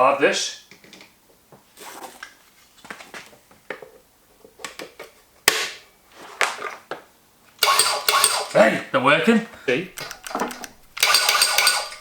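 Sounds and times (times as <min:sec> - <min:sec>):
metal clicks and clanks: 0:07.6 - 0:08.7, 0:09.9 - 0:12.0.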